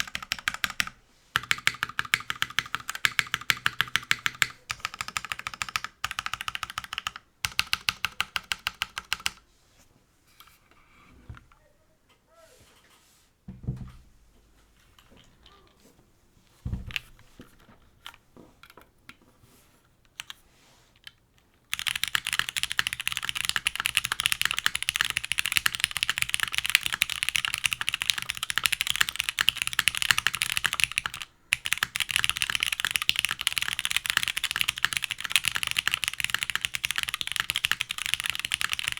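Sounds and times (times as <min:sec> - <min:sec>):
typing on mechanical keyboard: 0:00.0 - 0:09.4, 0:20.2 - 0:20.4, 0:21.0 - 0:38.9
soft thumps: 0:13.5 - 0:17.8.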